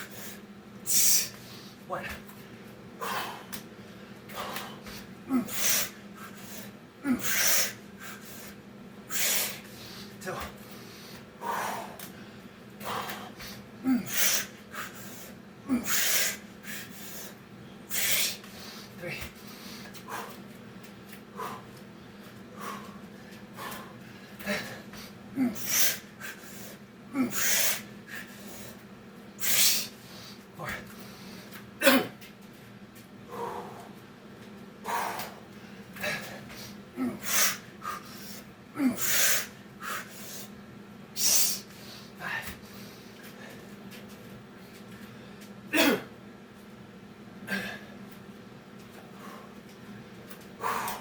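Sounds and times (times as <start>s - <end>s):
man breathing hard: 0.0s - 20.6s, 21.2s - 28.8s, 33.2s - 34.1s, 34.8s - 40.6s, 41.2s - 43.8s, 48.9s - 49.8s, 50.5s - 51.0s
man grunting: 1.9s - 2.2s, 4.4s - 5.9s, 10.2s - 10.6s, 12.8s - 14.5s, 19.0s - 19.4s, 24.4s - 26.0s, 27.1s - 27.8s, 30.6s - 30.9s, 36.0s - 37.4s, 38.7s - 39.1s, 42.2s - 42.6s
man exhaling forcefully: 7.0s - 8.2s, 50.6s - 51.0s.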